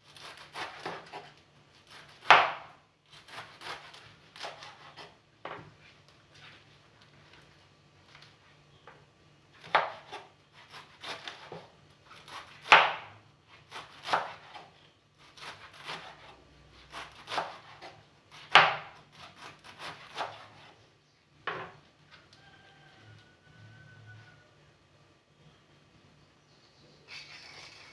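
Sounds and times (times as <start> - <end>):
knife chopping on wooden board: 0.2 - 1.3, 1.9 - 5.6, 9.6 - 13.1, 13.7 - 14.7, 15.3 - 20.7.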